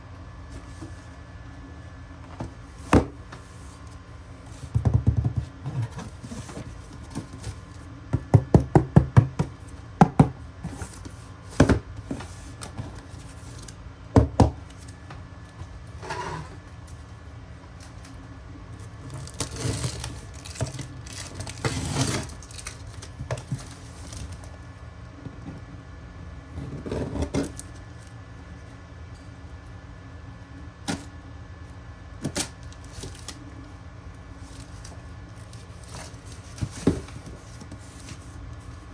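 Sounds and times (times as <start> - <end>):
rustling and scraping: 0.5 - 1.2, 2.3 - 7.8, 15.6 - 17.2, 18.8 - 24.6, 34.4 - 38.9.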